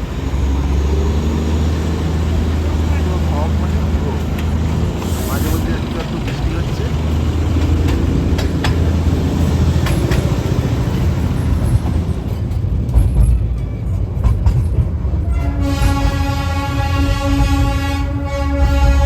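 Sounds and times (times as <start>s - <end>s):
train rumbling: 0.0s - 19.0s
train horn blast: 15.2s - 19.0s.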